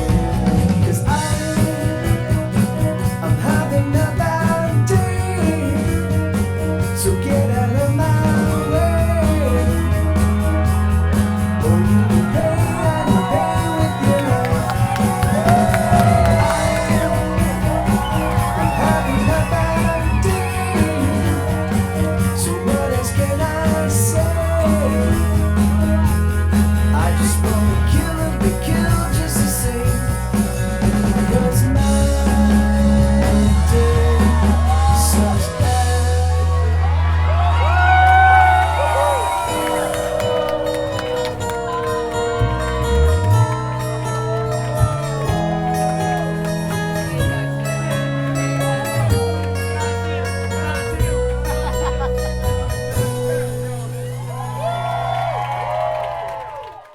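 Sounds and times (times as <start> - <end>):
rock and roll song: 0.0 - 56.4
bass line: 0.0 - 56.6
person singing and shouting: 7.0 - 26.1, 31.1 - 36.8.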